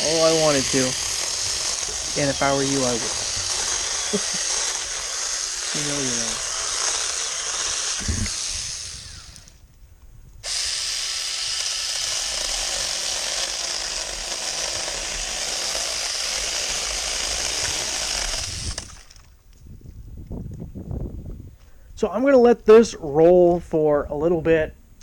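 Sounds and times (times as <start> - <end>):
mini chainsaw motor whining: 0.0 - 9.7, 10.4 - 19.4.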